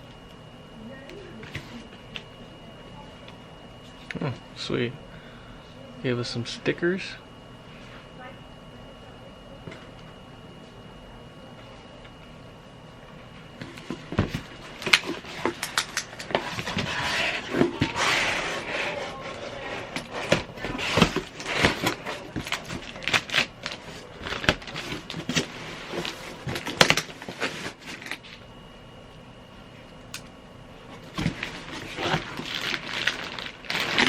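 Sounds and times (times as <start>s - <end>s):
packaging rustling: 14.3s - 28.3s, 31.0s - 34.0s.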